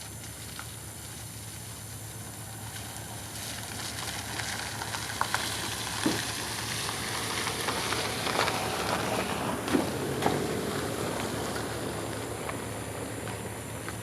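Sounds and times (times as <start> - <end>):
steady hiss: 0.0 - 14.0.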